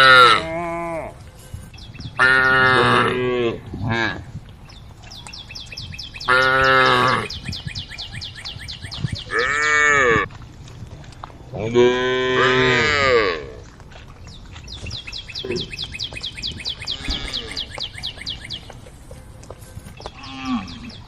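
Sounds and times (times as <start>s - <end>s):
cattle mooing: 0.0s - 1.2s, 2.2s - 4.2s, 9.3s - 10.3s, 11.6s - 13.6s, 16.8s - 17.7s.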